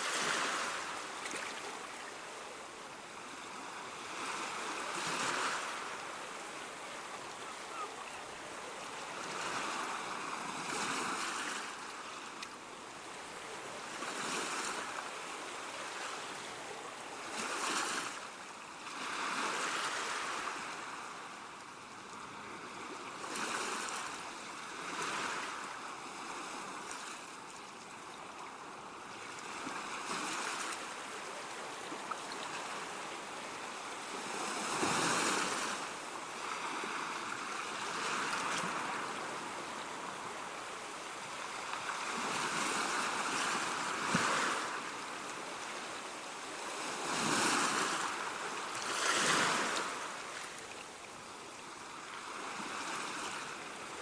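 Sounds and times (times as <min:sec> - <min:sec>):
ocean waves breaking: 0:00.0 - 0:18.2, 0:29.5 - 0:51.0.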